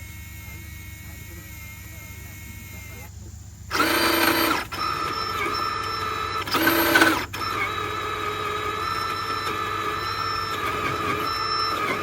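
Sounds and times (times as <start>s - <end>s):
small electric motor whining: 0.0s - 12.0s.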